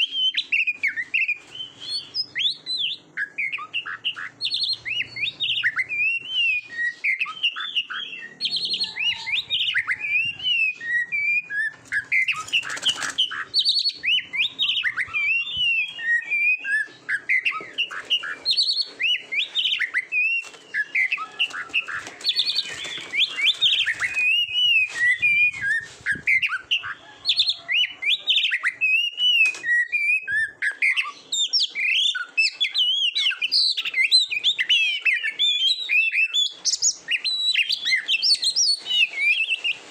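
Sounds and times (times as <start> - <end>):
songbird whistling and trilling: 0.0 - 39.9
bird harsh scratchy calls: 7.1 - 29.8, 35.9 - 39.9.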